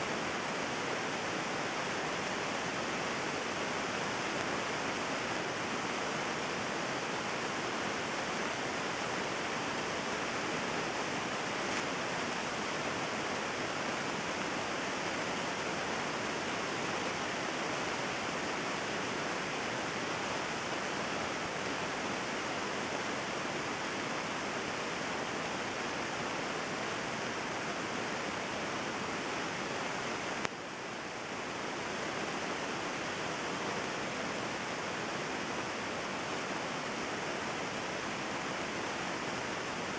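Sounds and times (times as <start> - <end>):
heavy rain hiss: 0.0 - 39.9.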